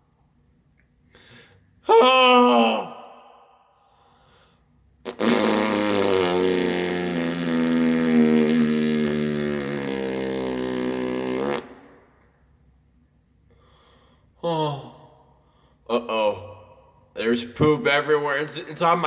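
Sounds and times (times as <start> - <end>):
long fart noise: 5.0 - 12.2.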